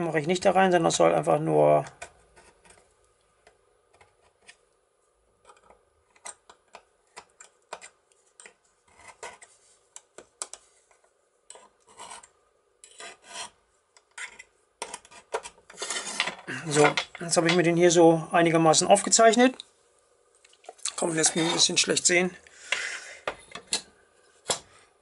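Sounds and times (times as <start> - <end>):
scriber scratching sheet metal: 11.5 - 16.4.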